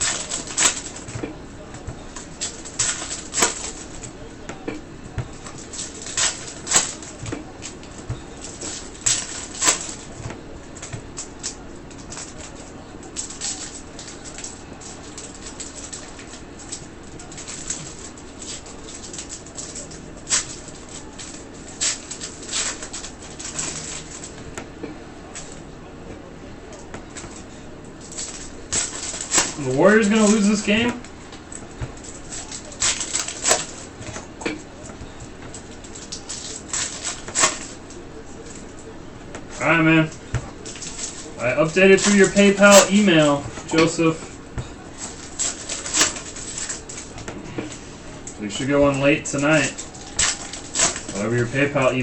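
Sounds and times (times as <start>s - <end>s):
trading cards and wrappers rustling: 5.2s - 24.5s, 27.0s - 52.0s
cards swishing and rustling: 26.9s - 34.3s, 39.4s - 51.8s.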